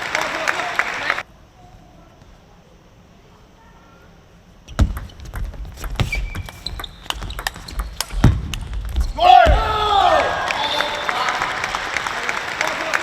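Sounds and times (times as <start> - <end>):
shoes squeaking on floor: 4.6 - 9.4
table tennis ball strikes: 4.7 - 9.7.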